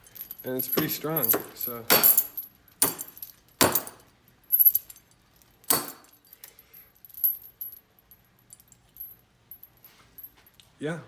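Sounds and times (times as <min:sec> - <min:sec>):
chain clinking against metal: 0:00.0 - 0:10.6.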